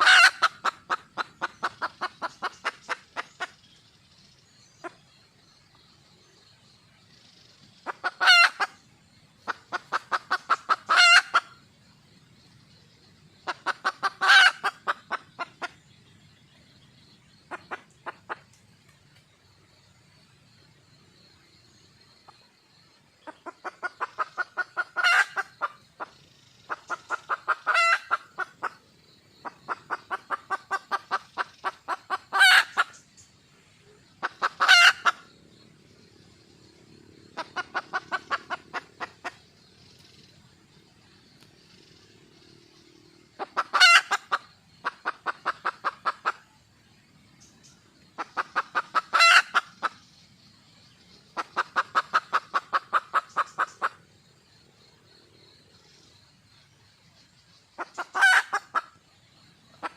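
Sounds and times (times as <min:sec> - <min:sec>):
hen clucking and squawking: 0:00.0 - 0:03.6, 0:07.8 - 0:08.8, 0:09.5 - 0:11.5, 0:13.4 - 0:15.8, 0:23.3 - 0:28.8, 0:29.4 - 0:33.0, 0:34.2 - 0:35.3, 0:37.4 - 0:39.4, 0:43.4 - 0:46.5, 0:48.2 - 0:50.0, 0:51.4 - 0:54.0, 0:57.8 - 0:58.9.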